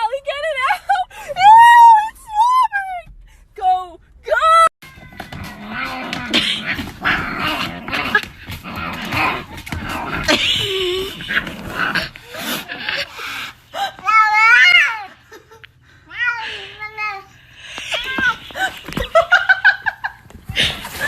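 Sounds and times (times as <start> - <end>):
scuffling and clicking: 4.8 - 12.9, 17.7 - 21.0.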